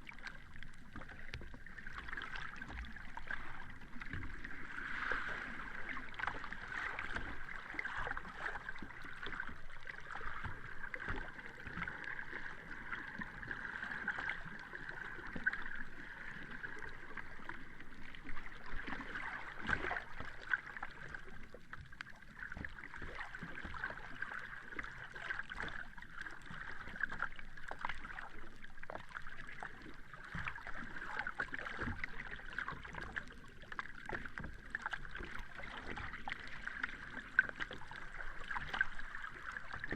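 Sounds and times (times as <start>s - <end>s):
sea water lapping and gurgling: 0.0s - 39.9s
water splashes: 0.0s - 39.9s.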